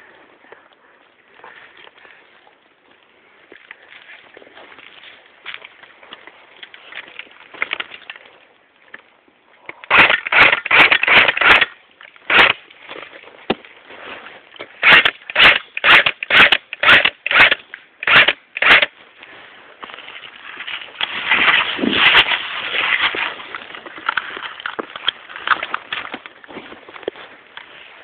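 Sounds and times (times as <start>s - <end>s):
footsteps crunching on dry ground: 0.0s - 9.4s, 12.2s - 15.0s, 18.9s - 28.0s.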